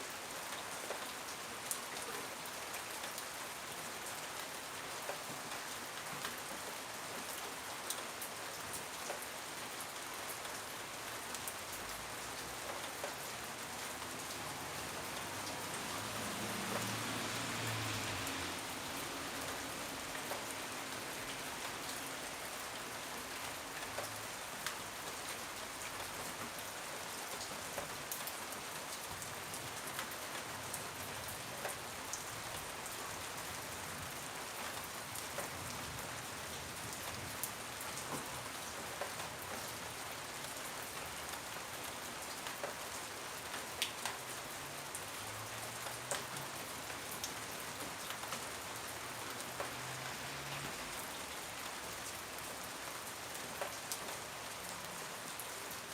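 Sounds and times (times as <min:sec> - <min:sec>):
steady rain hiss: 0:00.0 - 0:55.9.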